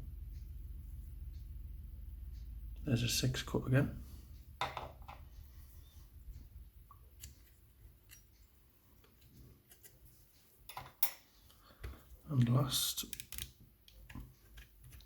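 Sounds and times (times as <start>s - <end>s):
lock parts clicking and scraping: 13.0s - 15.0s.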